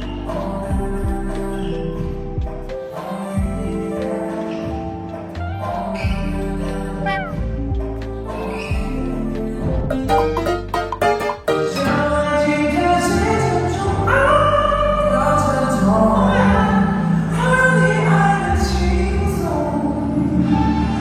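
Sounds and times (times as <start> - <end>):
voices singing held notes: 9.9 - 13.2.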